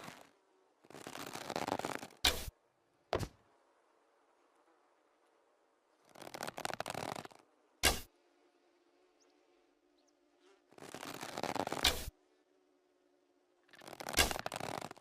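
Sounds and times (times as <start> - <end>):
arrow rustling and scraping: 0.0 - 2.6, 10.7 - 12.2, 13.8 - 15.0.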